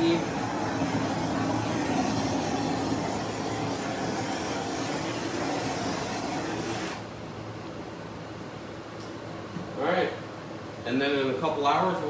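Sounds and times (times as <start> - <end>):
torch flame hissing: 0.0 - 7.1.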